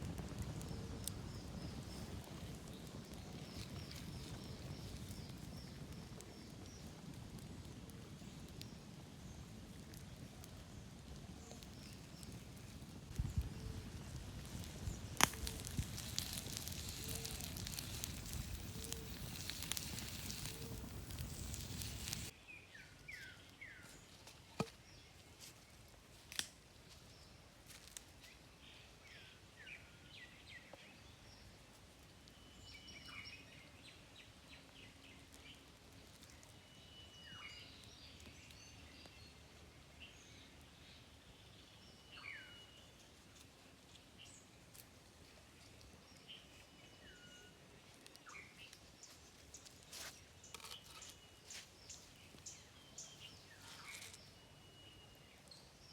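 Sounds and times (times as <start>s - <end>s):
steady hiss with crackles: 0.0s - 22.4s, 30.8s - 47.2s, 47.8s - 55.9s
birds chirping: 13.2s - 22.3s.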